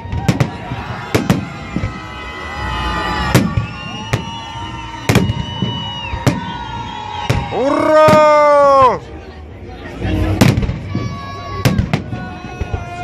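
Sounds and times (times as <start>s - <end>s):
firework whistles: 0.0s - 8.2s.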